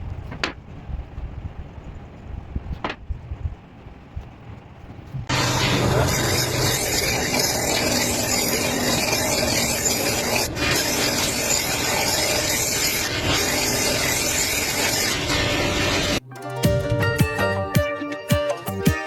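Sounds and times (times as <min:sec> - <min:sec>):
abrasive tool rubbing wood: 0:05.3 - 0:16.2.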